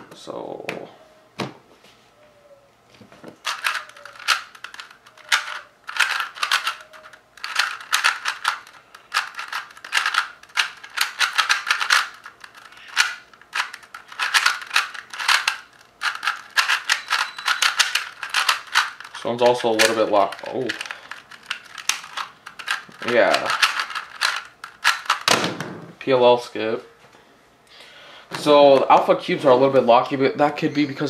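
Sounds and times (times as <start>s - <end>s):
plastic puzzle cube clicking: 3.5s - 19.2s, 19.8s - 25.3s.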